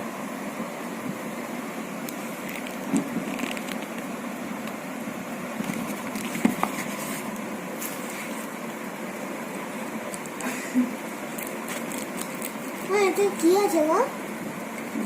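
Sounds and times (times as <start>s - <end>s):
background hum and hiss: 0.0s - 15.0s
handling clicks and rustles: 5.6s - 8.0s.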